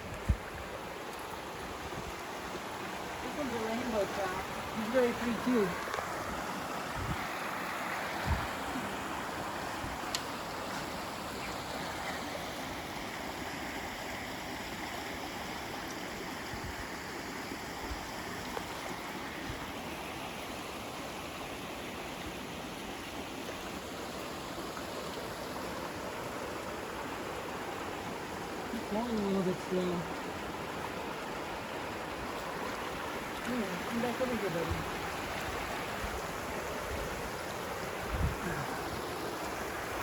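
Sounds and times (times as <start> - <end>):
river water running: 0.0 - 40.0.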